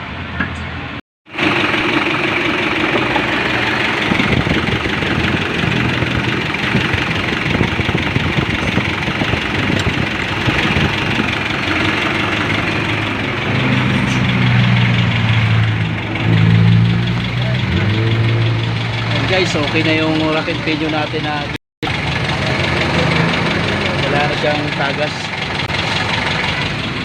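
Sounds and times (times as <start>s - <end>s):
car engine idling: 1.3s - 27.0s.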